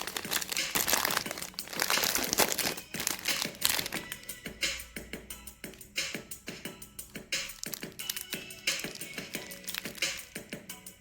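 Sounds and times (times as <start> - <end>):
candy wrapper crinkling: 0.0 - 4.2, 7.4 - 10.6.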